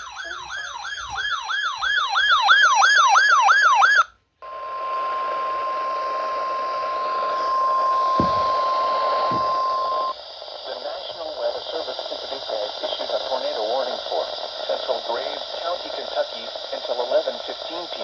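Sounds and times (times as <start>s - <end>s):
electronic siren-like alarm yelping: 0.0s - 10.2s
steady high alarm tone: 0.0s - 11.5s
radio static: 4.4s - 18.0s.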